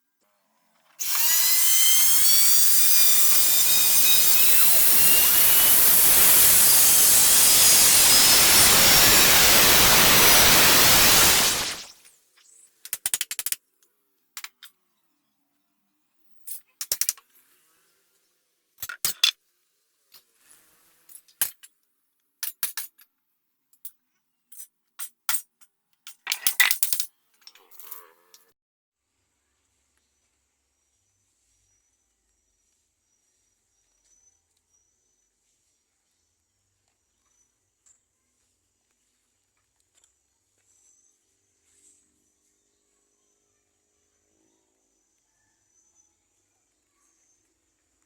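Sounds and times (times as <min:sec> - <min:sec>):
power tool cutting wood: 0:01.0 - 0:12.0
wooden pieces clicking and knocking: 0:12.9 - 0:13.6, 0:16.8 - 0:17.2.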